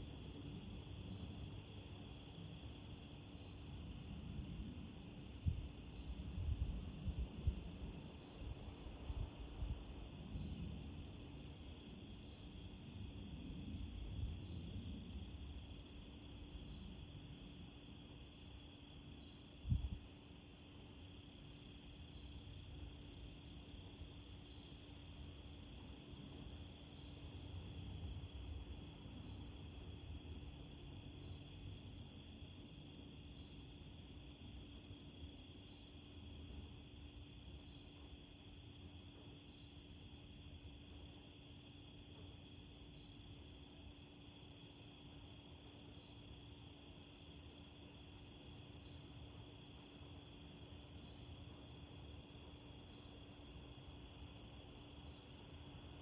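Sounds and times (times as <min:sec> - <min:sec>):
crickets trilling: 0:00.0 - 0:56.0
night insects chirring: 0:00.0 - 0:56.0
low wind rumble: 0:03.8 - 0:11.8, 0:19.6 - 0:20.2.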